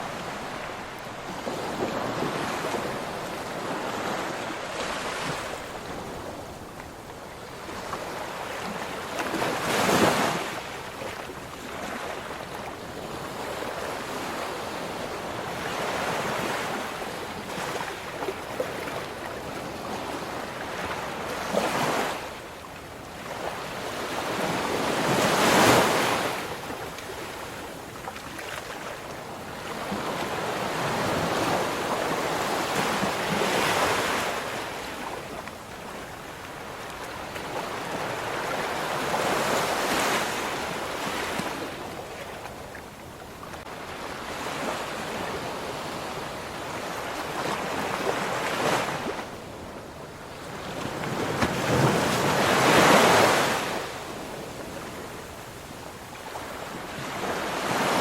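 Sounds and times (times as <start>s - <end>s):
ocean waves crashing on shore: 0.0s - 58.0s.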